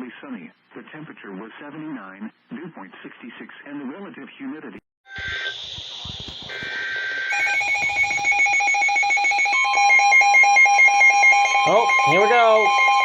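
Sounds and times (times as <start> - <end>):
hissing data bursts: 5.1 - 8.8.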